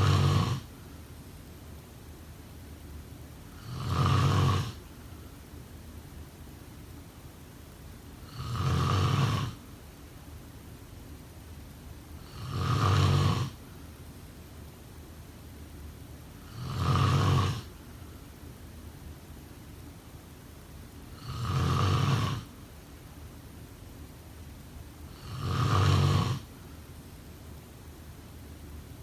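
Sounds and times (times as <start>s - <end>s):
person snoring: 0.0s - 0.7s, 3.6s - 4.8s, 8.3s - 9.6s, 12.2s - 13.6s, 16.4s - 17.7s, 21.2s - 22.5s, 25.1s - 26.5s.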